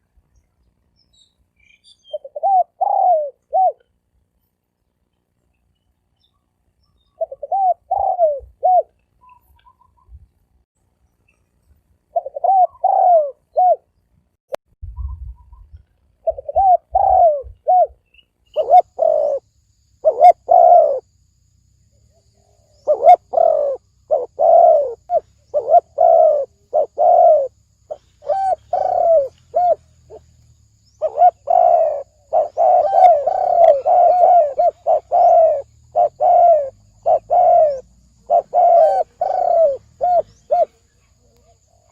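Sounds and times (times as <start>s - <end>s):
dove cooing: 2.1s - 3.8s, 7.2s - 10.2s, 12.1s - 13.9s, 16.2s - 21.1s, 22.2s - 30.3s, 31.0s - 41.9s.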